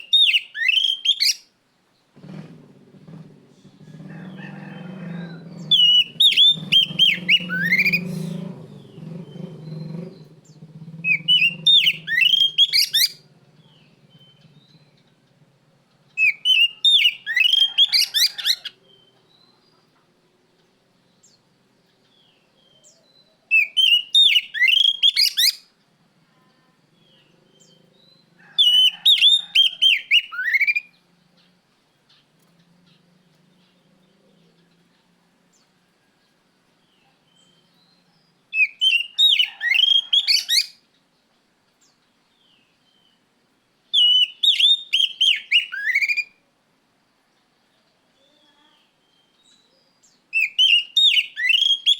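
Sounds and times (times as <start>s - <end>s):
bird singing whistled notes: 0.0s - 1.5s, 3.1s - 15.2s, 16.2s - 19.5s, 22.1s - 25.7s, 27.0s - 31.0s, 37.0s - 40.8s, 43.9s - 46.4s, 48.2s - 51.9s.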